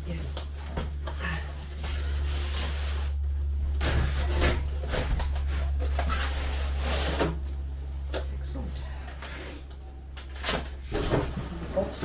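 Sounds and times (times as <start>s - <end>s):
steady low hum: 0.0s - 12.0s
cardboard scraping and rustling: 1.6s - 7.5s.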